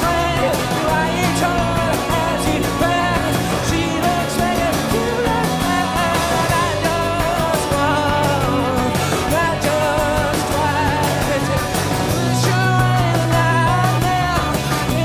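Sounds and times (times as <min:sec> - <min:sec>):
live rock band playing: 0:00.0 - 0:15.0
man singing: 0:00.0 - 0:15.0.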